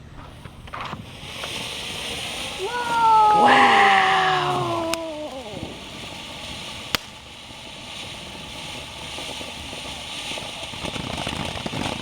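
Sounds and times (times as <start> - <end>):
firework crackle: 0.0 - 12.0
firework hissing: 0.0 - 12.0
firework pop: 6.9 - 7.1.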